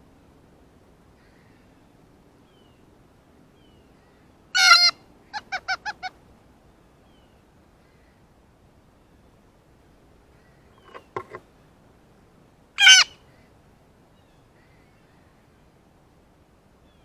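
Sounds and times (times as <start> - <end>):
blue jay calling: 4.6 - 6.1, 10.8 - 11.4, 12.8 - 13.2.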